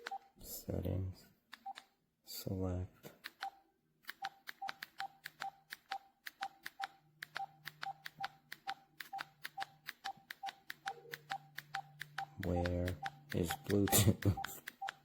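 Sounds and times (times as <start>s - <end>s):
phone key clicks with beeps: 3.3s - 15.0s.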